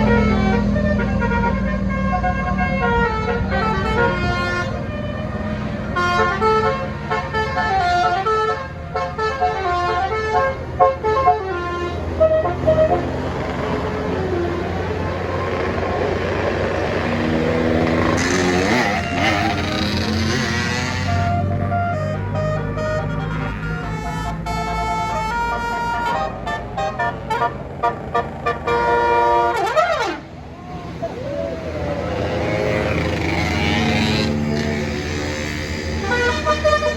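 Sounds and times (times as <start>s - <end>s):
musical bus horn tune: 0.0s - 30.5s, 32.8s - 36.9s
bus engine running: 0.0s - 36.9s.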